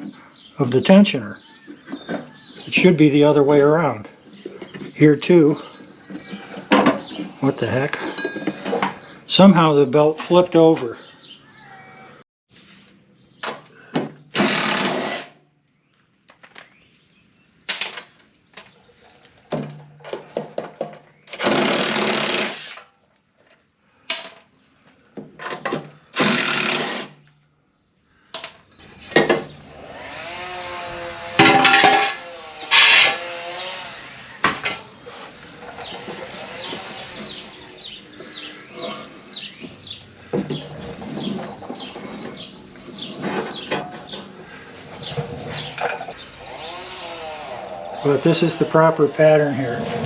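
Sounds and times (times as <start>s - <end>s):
metal clanks and clicks: 5.6s - 9.0s
short scraping rubs: 30.4s - 39.4s, 40.6s - 48.1s.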